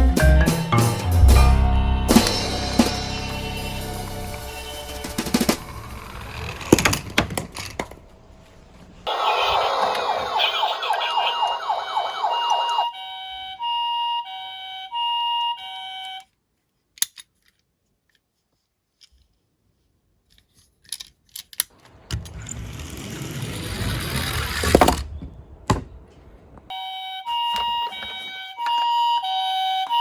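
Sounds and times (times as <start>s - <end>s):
toy car rolling down a slope: 4.6s - 8.1s, 22.1s - 25.1s
toy car clack: 5.1s - 8.1s
toy two-tone siren: 9.1s - 16.3s, 26.7s - 30.0s.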